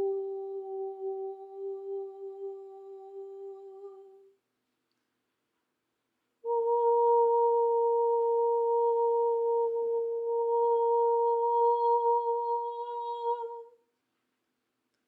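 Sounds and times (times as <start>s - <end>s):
hummed tone: 0.0s - 4.2s.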